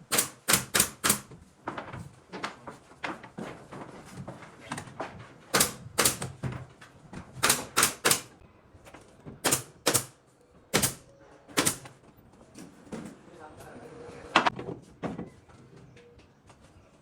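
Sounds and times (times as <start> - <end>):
hammer driving nails into wood: 0.0 - 1.4, 5.5 - 6.4, 7.4 - 8.4, 9.4 - 11.9.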